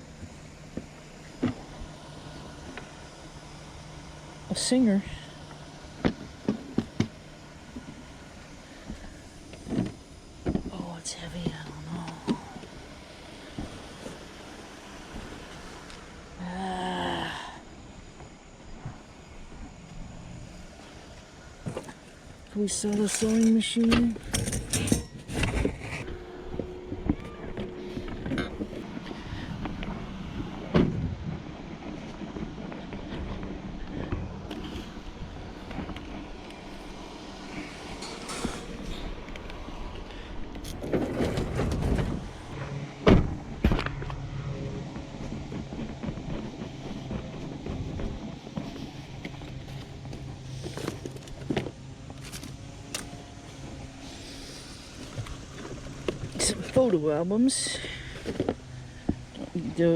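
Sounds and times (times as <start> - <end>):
low engine hum: 0.0 - 59.9
objects knocking and rattling: 22.7 - 26.1
junk clattering and knocking: 22.7 - 28.9, 40.6 - 44.1.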